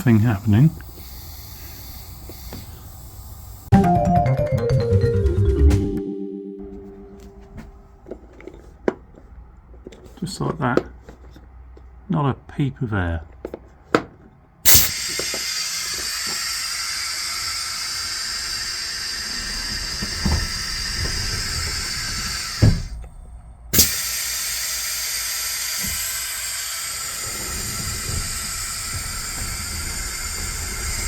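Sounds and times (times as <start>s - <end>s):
compressed air hissing: 0.0s - 3.7s, 14.6s - 23.1s, 23.7s - 31.0s.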